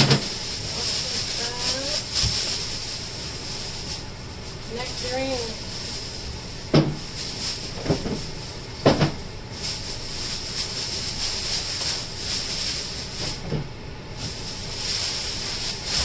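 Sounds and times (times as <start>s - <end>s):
food knocking in refrigerator: 0.0s - 0.5s, 6.6s - 7.1s, 7.7s - 9.3s
steady hiss: 0.0s - 16.0s.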